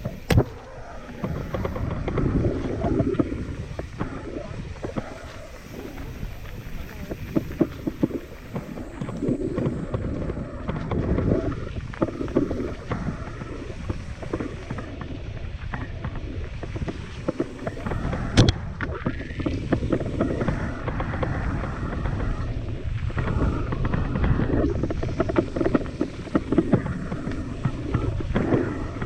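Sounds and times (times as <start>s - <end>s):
bike rattling on rough trail: 0.0s - 29.0s
wind buffeting microphone: 0.0s - 29.0s.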